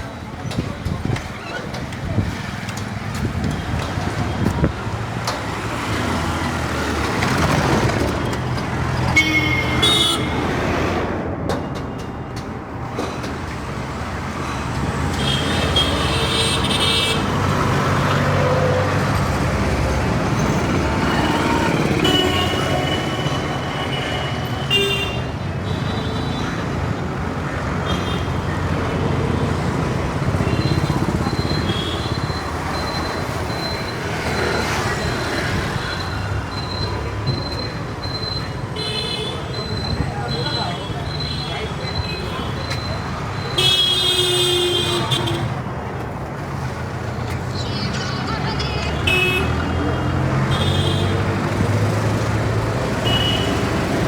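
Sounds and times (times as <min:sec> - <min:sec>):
traffic engines rumbling: 0:00.0 - 0:54.0
vehicle horns honking: 0:09.1 - 0:10.5, 0:21.1 - 0:26.4, 0:43.4 - 0:45.6, 0:48.1 - 0:51.4, 0:53.0 - 0:53.8.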